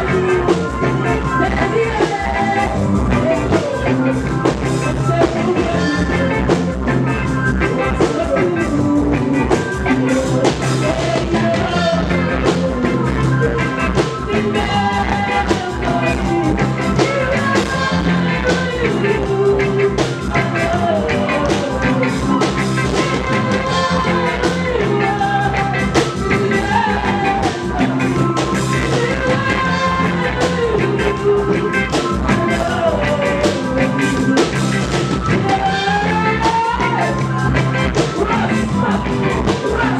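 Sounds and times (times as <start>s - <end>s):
live reggae band playing: 0.0s - 39.9s
person singing: 0.0s - 39.9s.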